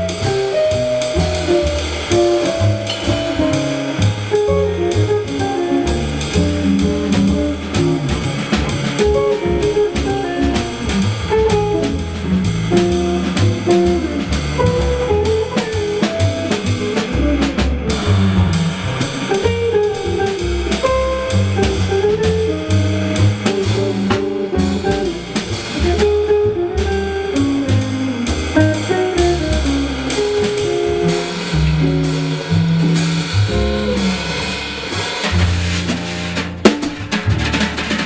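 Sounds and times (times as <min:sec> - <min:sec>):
guitar picking melody: 0:00.0 - 0:35.0
bass notes: 0:00.0 - 0:38.0
drum kit with cymbals: 0:00.0 - 0:38.0.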